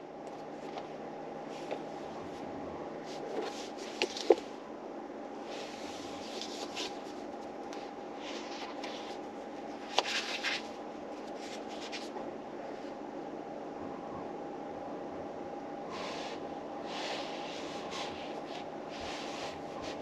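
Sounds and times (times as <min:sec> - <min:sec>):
steady background hum: 0:00.0 - 0:20.0
book pages rustling: 0:03.0 - 0:04.5, 0:05.5 - 0:12.2.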